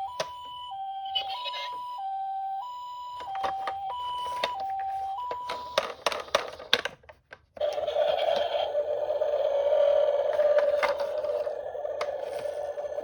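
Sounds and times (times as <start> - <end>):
two-tone ambulance siren: 0.0 - 6.3, 7.6 - 13.0
toy cars clattering: 3.2 - 13.0
toy cars rolling scrape: 7.6 - 13.0.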